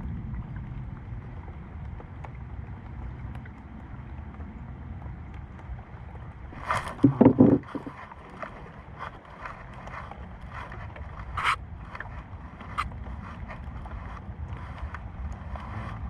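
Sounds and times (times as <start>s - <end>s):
steady low rumble: 0.0s - 16.0s
knocks and thuds in boat: 5.4s - 16.0s.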